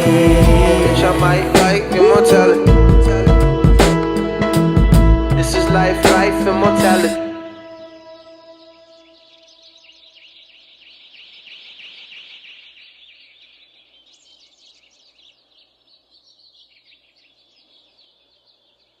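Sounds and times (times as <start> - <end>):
held music chord: 0.0 - 9.7
small birds chirping: 7.5 - 19.0.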